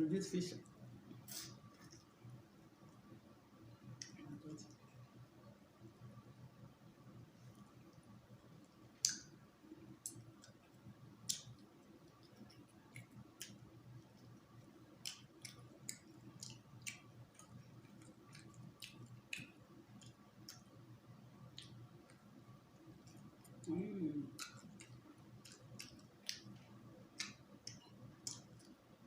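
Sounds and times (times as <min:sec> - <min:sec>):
faint low hum: 0:00.0 - 0:29.0
wet chewing clicks and smacks: 0:07.6 - 0:28.9.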